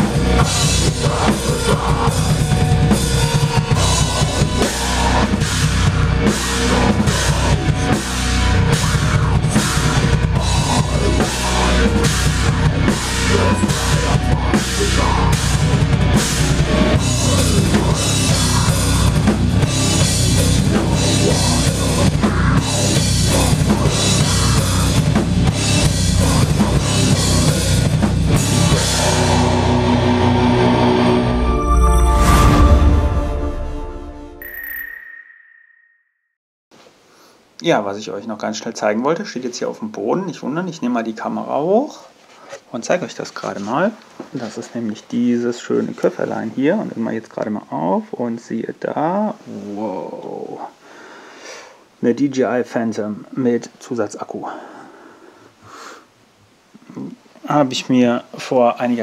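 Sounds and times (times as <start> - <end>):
loud rock band: 0.0 - 34.0
music with held notes: 0.0 - 34.4.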